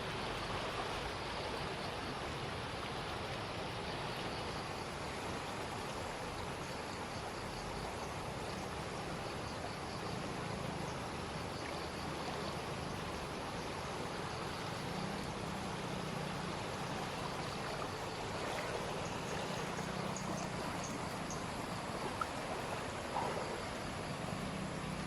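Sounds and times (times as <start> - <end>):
floodwater rushing: 0.0 - 25.0.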